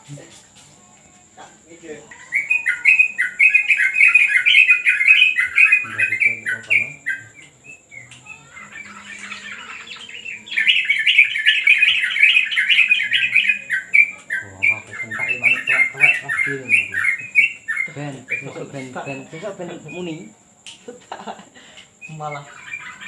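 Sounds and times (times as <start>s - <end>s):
bird chattering: 1.8s - 23.0s.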